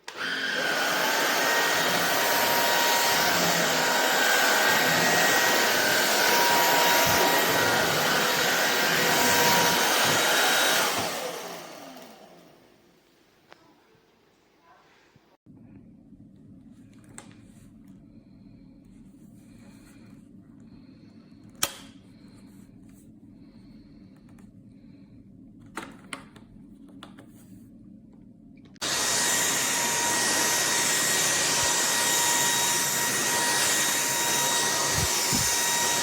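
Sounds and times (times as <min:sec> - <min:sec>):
stick vacuum motor whine: 0:00.0 - 0:12.6, 0:28.8 - 0:36.0.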